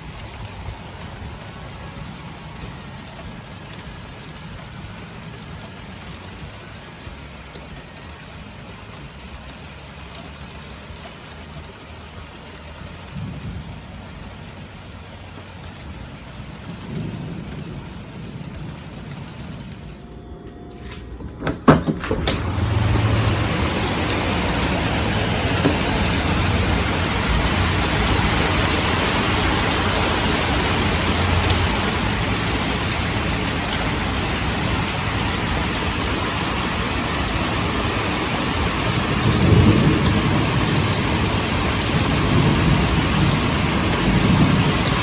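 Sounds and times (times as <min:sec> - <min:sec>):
low thunder rumbles: 0:00.0 - 0:08.4, 0:12.8 - 0:45.0
steady rain falling: 0:00.0 - 0:21.0, 0:22.0 - 0:45.0
sharp knocks: 0:20.5 - 0:22.4.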